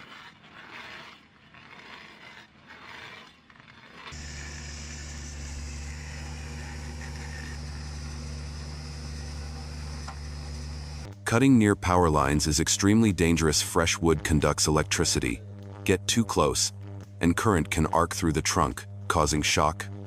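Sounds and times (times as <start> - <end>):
scraping and crunching: 0.0 - 8.9
engine running steadily: 4.2 - 11.1.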